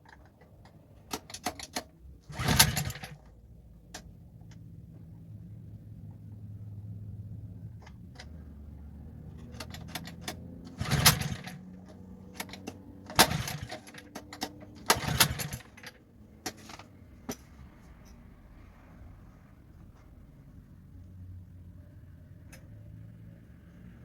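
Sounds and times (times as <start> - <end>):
hard objects clicking and knocking: 9.4 - 18.2.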